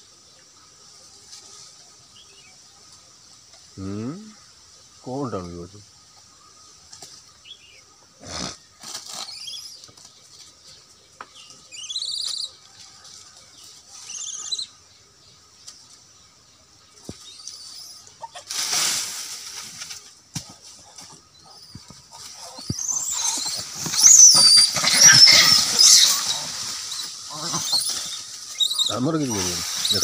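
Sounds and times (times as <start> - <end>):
rustling scuffle: 18.4 - 30.0
monkeys screaming: 21.5 - 30.0.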